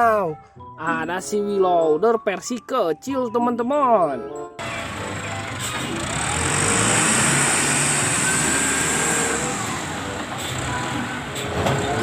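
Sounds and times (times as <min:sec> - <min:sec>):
engine running: 0:04.6 - 0:12.0.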